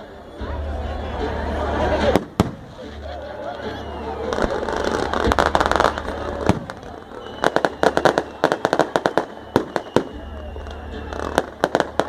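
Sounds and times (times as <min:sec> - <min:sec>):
firecrackers banging: 0:02.0 - 0:03.0, 0:03.9 - 0:12.0.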